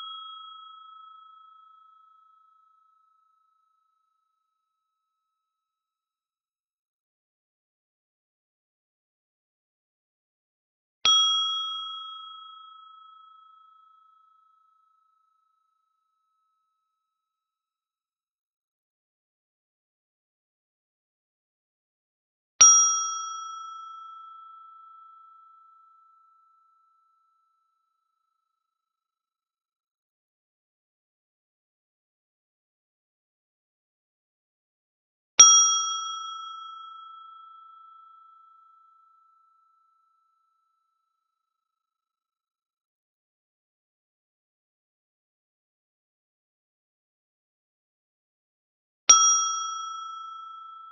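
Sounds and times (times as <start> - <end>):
small brass bell ringing: 0.0 - 2.8, 35.4 - 39.0, 49.1 - 50.9.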